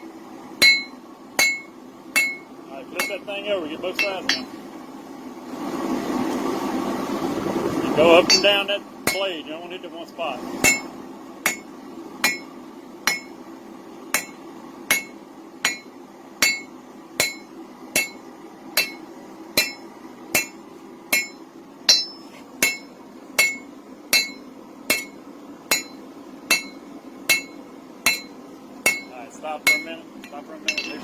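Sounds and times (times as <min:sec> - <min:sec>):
hammer striking metal on anvil: 0:00.6 - 0:03.3, 0:04.0 - 0:04.6, 0:08.2 - 0:09.3, 0:10.6 - 0:11.6, 0:12.2 - 0:13.4, 0:14.2 - 0:18.2, 0:18.8 - 0:19.0, 0:19.6 - 0:31.0.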